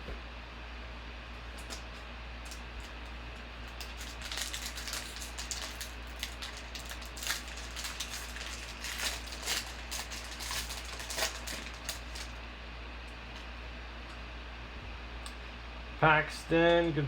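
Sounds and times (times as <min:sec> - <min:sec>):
card pack wrappers crinkling: 0:01.5 - 0:12.4.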